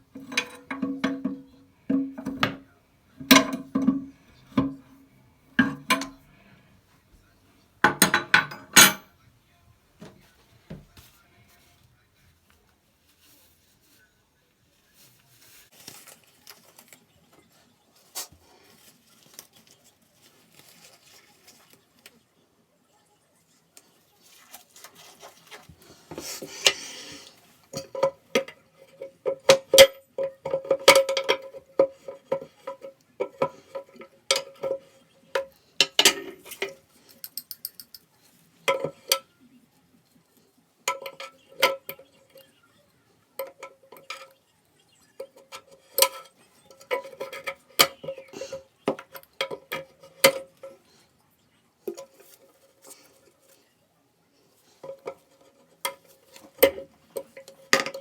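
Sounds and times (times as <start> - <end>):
hard objects clinking and knocking: 0.0 - 6.4, 7.8 - 9.1, 27.6 - 38.1, 45.1 - 50.8, 54.8 - 58.0
rustling: 9.9 - 22.3, 23.4 - 51.2.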